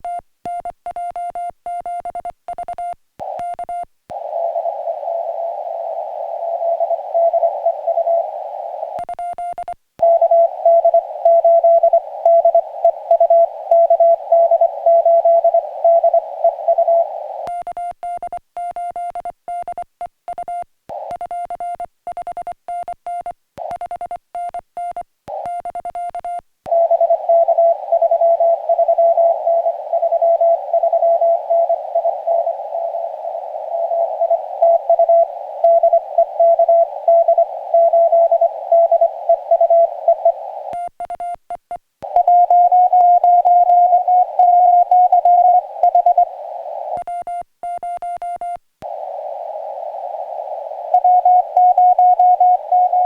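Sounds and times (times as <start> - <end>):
radio hiss: 3.2 - 9.1, 10.0 - 17.6, 20.9 - 21.3, 26.7 - 40.9, 42.0 - 47.2, 48.8 - 53.0
morse code beeping tone: 47.0 - 48.6.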